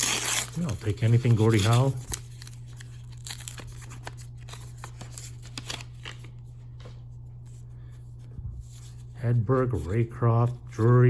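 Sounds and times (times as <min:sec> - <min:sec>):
foil wrapper rustling and tearing: 0:00.0 - 0:06.3
steady low hum: 0:00.0 - 0:11.0.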